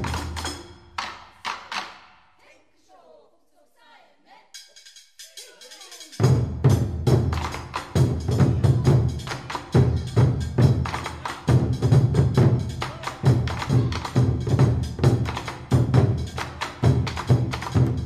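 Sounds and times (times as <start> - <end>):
fast clicky percussion: 4.6 - 18.0.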